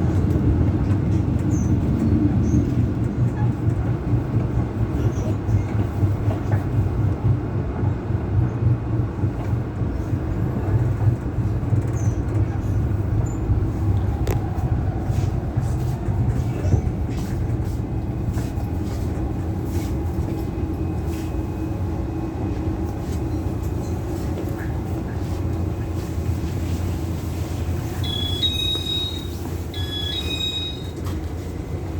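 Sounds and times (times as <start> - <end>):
rail clicks: 0.0 - 21.4.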